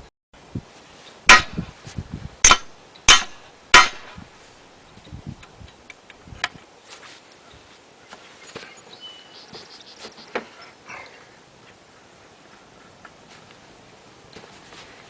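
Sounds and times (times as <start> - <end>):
sharp metallic knocks: 1.3 - 1.6, 2.4 - 4.2.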